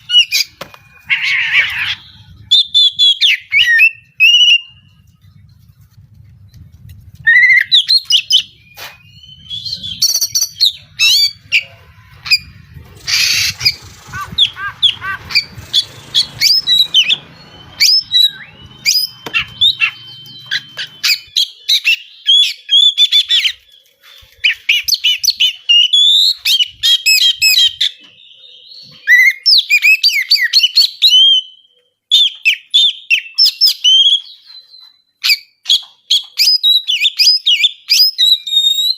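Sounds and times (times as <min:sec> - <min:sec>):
harsh rasping bird call: 0:00.0 - 0:04.7, 0:07.3 - 0:23.6
bird singing chirps and whistles: 0:00.0 - 0:05.3, 0:07.2 - 0:38.9.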